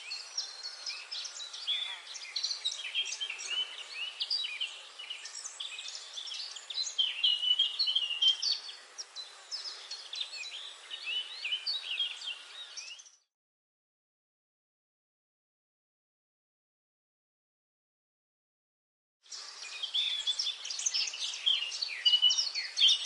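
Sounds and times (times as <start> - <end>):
small birds chirping: 0.0 - 13.3, 19.2 - 23.0.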